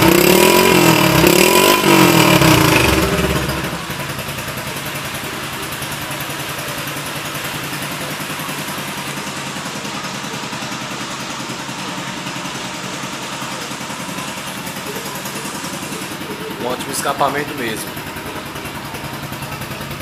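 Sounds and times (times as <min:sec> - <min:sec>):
motorcycle engine idling: 0:00.0 - 0:20.0.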